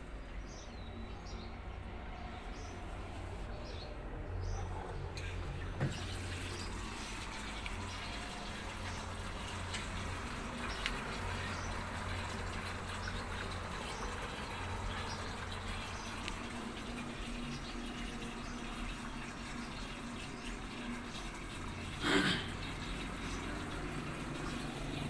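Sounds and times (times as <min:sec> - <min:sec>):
water rushing into washing machine: 0:05.0 - 0:25.0.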